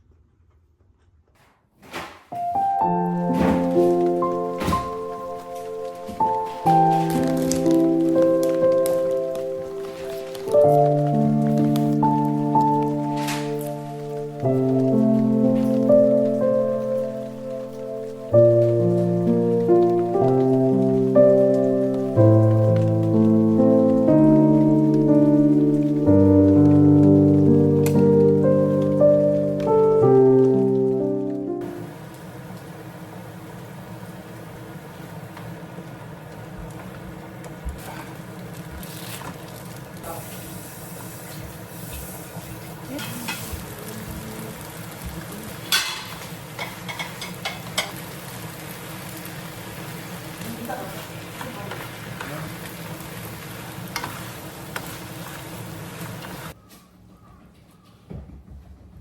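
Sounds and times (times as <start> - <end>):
sustained keyboard chords: 2.4 - 31.9
faint rain-like patter: 2.8 - 56.6
food sizzling in a frying pan: 3.7 - 29.5, 31.7 - 56.6.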